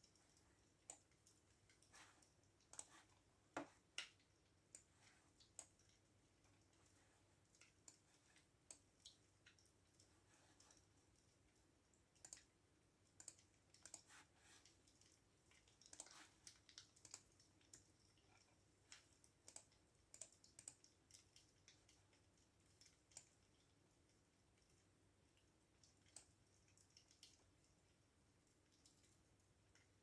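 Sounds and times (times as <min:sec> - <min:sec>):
computer keyboard typing: 0:13.2 - 0:14.2, 0:15.8 - 0:17.9.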